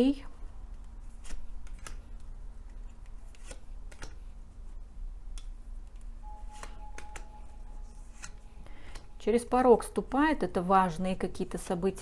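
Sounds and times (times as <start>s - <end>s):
faint steady hum: 0.0s - 12.0s
cards clicking on a table: 1.2s - 2.3s, 3.0s - 4.2s.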